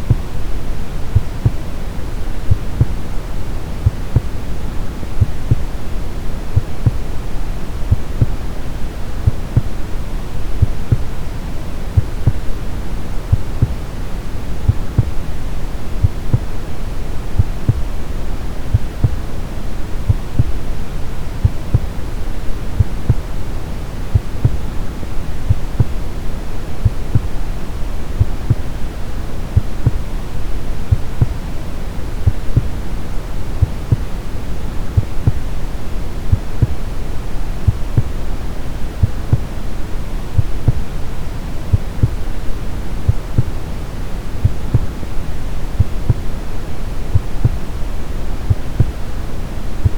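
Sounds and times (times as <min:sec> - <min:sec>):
heartbeat thumps: 0:00.0 - 0:01.7, 0:02.3 - 0:03.1, 0:03.8 - 0:05.8, 0:06.5 - 0:07.2, 0:07.8 - 0:08.5, 0:09.2 - 0:09.8, 0:10.6 - 0:11.2, 0:11.9 - 0:13.8, 0:14.6 - 0:15.3, 0:16.0 - 0:16.7, 0:17.3 - 0:19.4, 0:20.1 - 0:20.7, 0:21.4 - 0:23.4, 0:24.1 - 0:26.1, 0:26.8 - 0:27.4, 0:28.1 - 0:28.8, 0:29.5 - 0:30.1, 0:30.9 - 0:31.4, 0:32.2 - 0:32.9, 0:33.6 - 0:34.2, 0:34.9 - 0:35.5, 0:36.3 - 0:37.0, 0:37.6 - 0:38.2, 0:39.0 - 0:39.6, 0:40.4 - 0:40.9, 0:41.7 - 0:42.3, 0:43.0 - 0:43.6, 0:44.4 - 0:45.1, 0:45.7 - 0:46.4, 0:47.1 - 0:47.7, 0:48.5 - 0:49.0
brown noise hiss: 0:00.0 - 0:49.9.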